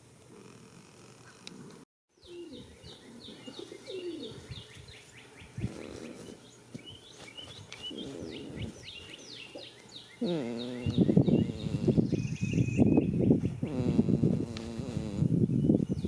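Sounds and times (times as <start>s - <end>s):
goat snoring: 0.3s - 1.8s, 5.6s - 6.5s, 7.9s - 8.9s, 10.2s - 12.2s, 13.6s - 15.4s
small birds chirping: 2.1s - 16.0s.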